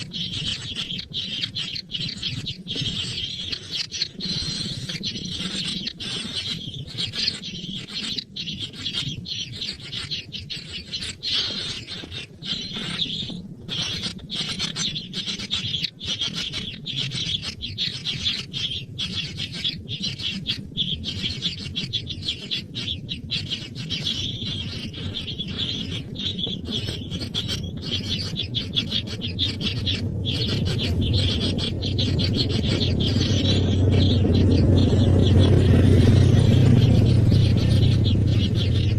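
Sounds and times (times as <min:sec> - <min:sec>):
high-pitched bird chirping: 0:00.0 - 0:38.9
low rumble: 0:29.6 - 0:38.9.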